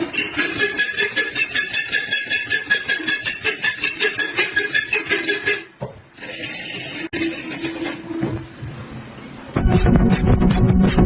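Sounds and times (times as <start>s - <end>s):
ringing metal-on-metal strokes: 0.0s - 7.9s
steady rasping noise: 0.0s - 8.2s, 9.6s - 11.0s.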